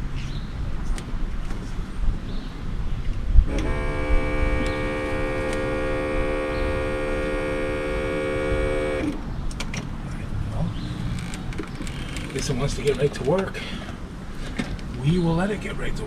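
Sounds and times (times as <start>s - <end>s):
small electric air pump humming: 3.5s - 9.2s.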